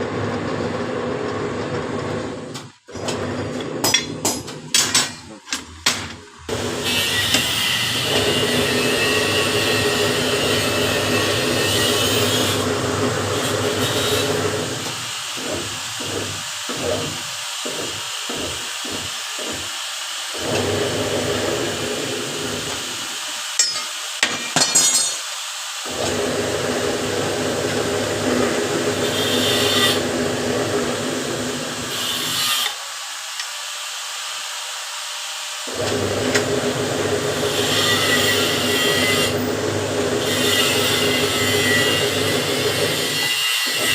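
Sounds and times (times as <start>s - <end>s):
power tool motor humming: 6.5s - 23.6s.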